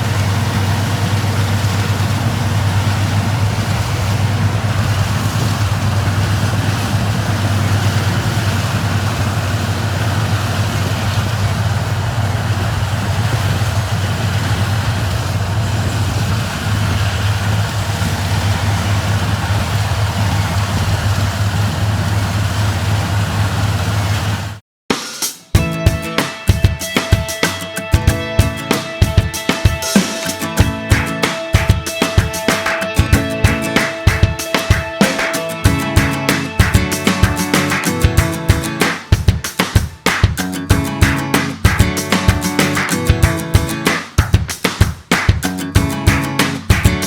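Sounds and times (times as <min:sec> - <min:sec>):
machinery engine droning: 0:00.0 - 0:24.5.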